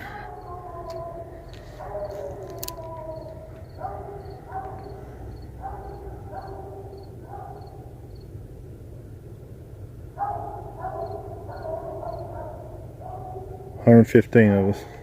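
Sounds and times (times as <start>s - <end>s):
distant dog barking: 0.0s - 8.1s, 10.1s - 14.0s
cricket chirping: 0.0s - 8.5s, 10.3s - 13.9s.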